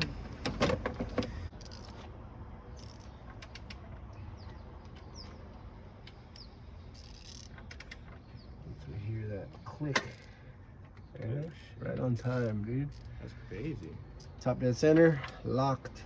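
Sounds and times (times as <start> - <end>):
sharp metallic clicks: 2.7 - 8.4, 9.8 - 13.3, 14.1 - 15.4.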